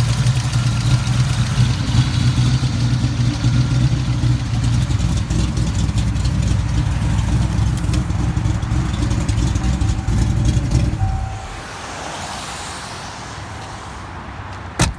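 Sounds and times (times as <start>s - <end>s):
car engine running with knocking tick: 0.0s - 11.6s.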